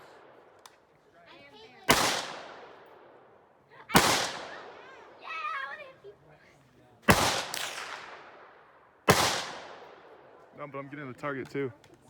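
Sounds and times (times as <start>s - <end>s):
gunshots echoing: 1.9s - 5.0s, 7.1s - 10.4s.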